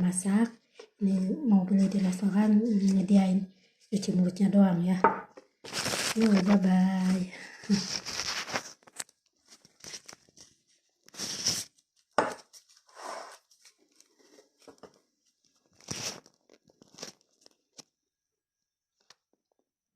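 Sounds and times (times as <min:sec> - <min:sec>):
rustling and crinkling handling: 0:05.5 - 0:17.9.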